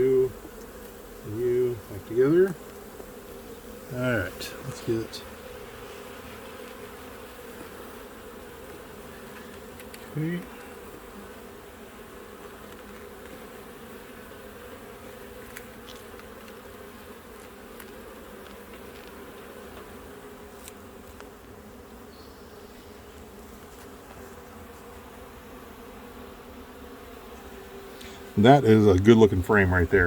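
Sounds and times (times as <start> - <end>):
honeybees humming: 0.0 - 30.0.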